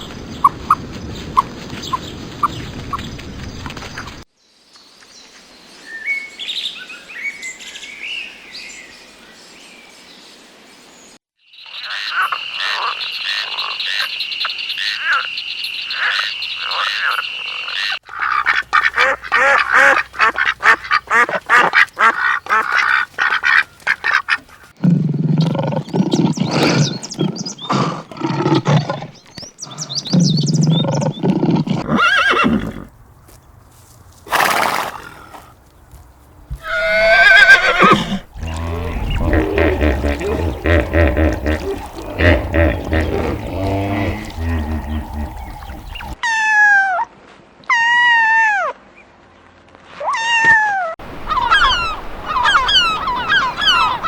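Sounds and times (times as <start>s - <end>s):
bird chirps: 25.2s - 27.9s, 28.8s - 31.4s, 36.7s - 46.2s
dense rapid animal calling: 25.3s - 32.9s, 36.6s - 46.2s, 51.2s - 54.0s
high peeping: 36.6s - 46.2s
lower-pitched animal calls: 36.6s - 46.7s.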